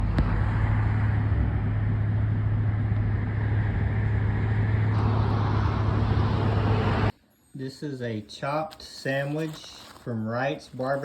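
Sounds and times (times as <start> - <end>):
car engine running: 0.0 - 7.1.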